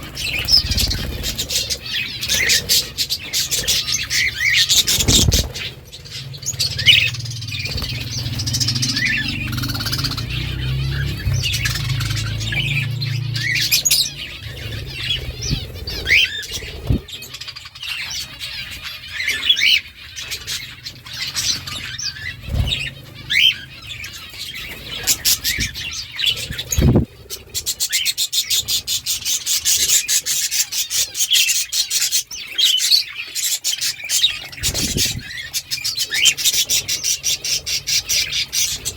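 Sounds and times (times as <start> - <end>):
budgerigars chirping: 0.0 - 38.9
low hum: 4.9 - 17.1.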